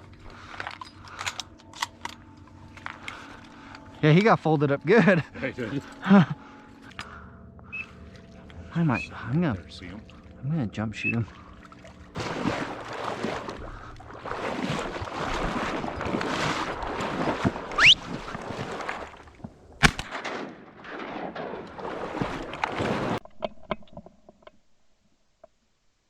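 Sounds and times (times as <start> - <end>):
paddle splashing through water: 11.0 - 20.0, 21.4 - 23.2.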